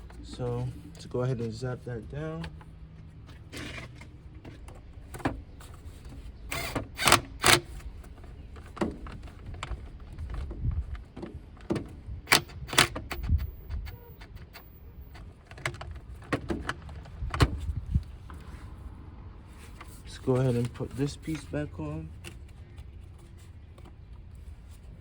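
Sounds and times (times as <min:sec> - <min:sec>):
tools clicking and clanking: 0:06.5 - 0:10.4, 0:11.6 - 0:17.4.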